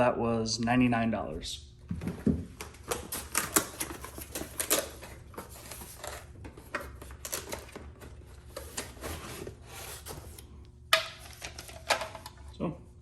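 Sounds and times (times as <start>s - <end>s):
packaging rustling and scraping: 2.5s - 10.6s.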